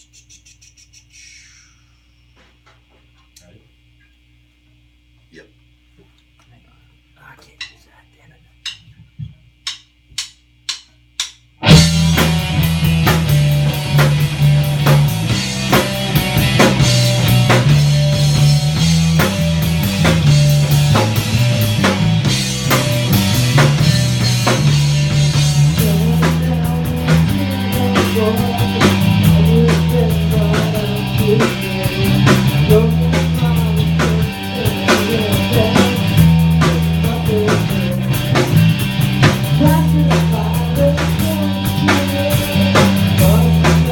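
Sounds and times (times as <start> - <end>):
rock band playing: 11.6 - 43.9.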